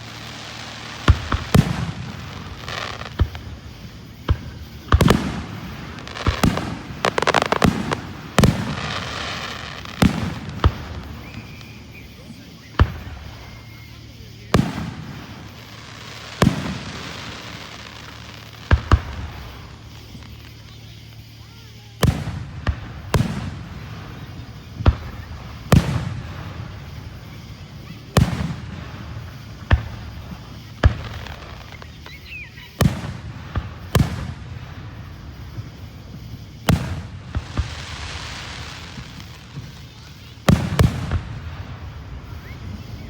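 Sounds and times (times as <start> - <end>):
fireworks bangs: 0.0 - 43.0
hissing crackle of fireworks: 0.0 - 43.0.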